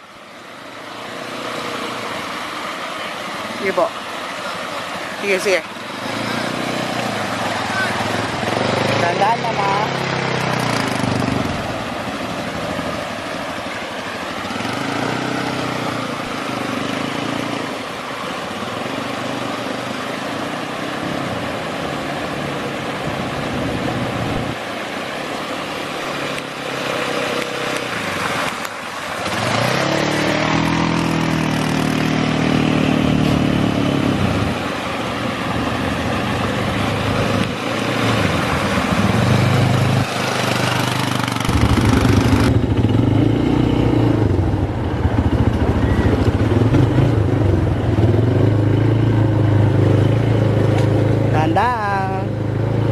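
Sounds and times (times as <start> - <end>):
quad bike engine running: 5.4 - 13.2, 14.4 - 17.8, 26.1 - 52.9.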